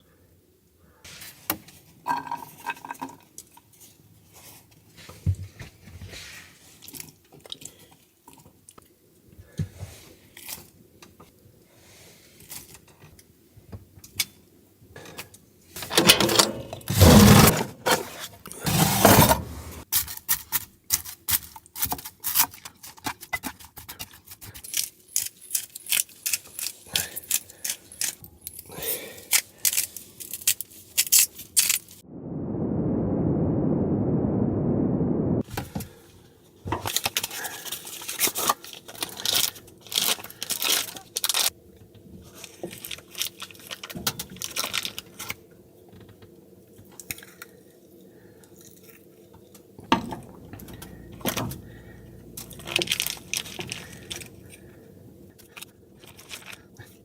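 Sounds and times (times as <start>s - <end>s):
rustling and scraping: 15.8s - 19.9s
small objects clicking and tapping: 20.0s - 28.7s.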